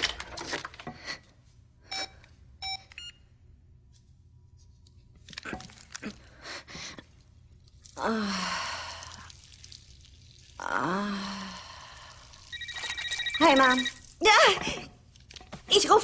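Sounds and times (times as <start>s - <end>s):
telephone ringing: 12.5s - 14.1s.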